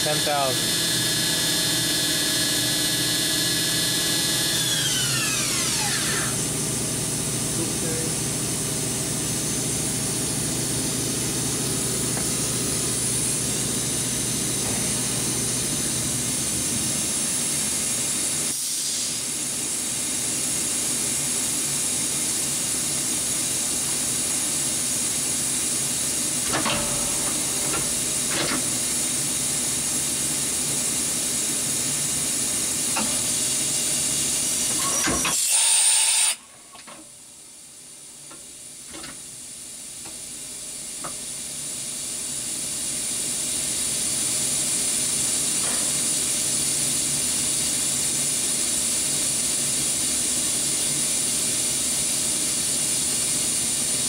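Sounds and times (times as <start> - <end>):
machine spindle high whine: 0.0 - 18.6.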